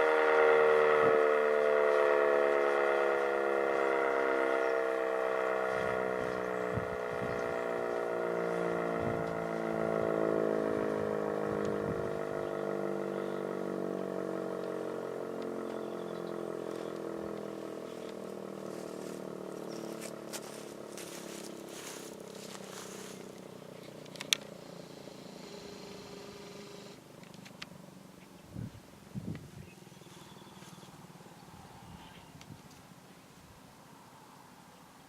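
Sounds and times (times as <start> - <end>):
fire siren winding down: 0.0 - 27.0.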